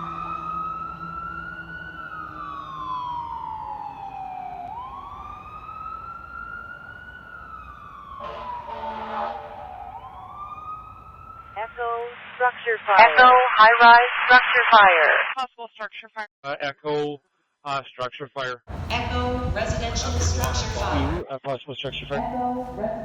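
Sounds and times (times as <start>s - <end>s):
fire engine siren wailing: 0.0s - 12.0s, 18.7s - 21.2s.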